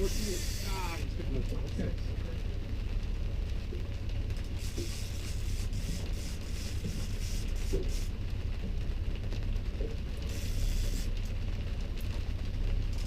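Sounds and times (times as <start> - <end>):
hissing noise: 0.0 - 1.0
boat motor rumbling: 0.0 - 12.9.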